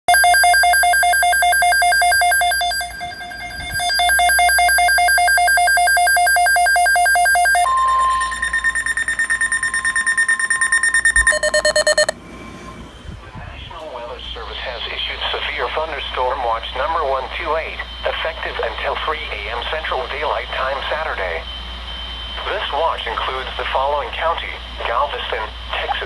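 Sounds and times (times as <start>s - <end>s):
fast-pulsing alarm tone: 0.1s - 12.2s
pulsing alert tone: 1.3s - 12.1s.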